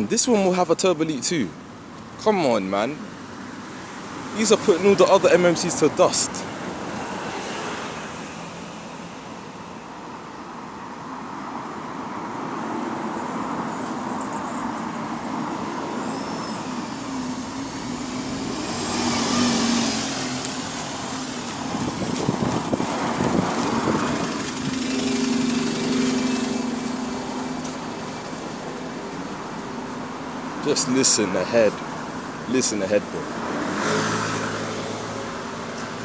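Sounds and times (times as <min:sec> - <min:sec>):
high turbo whine: 0:13.4 - 0:36.0
bus engine running: 0:15.4 - 0:33.5.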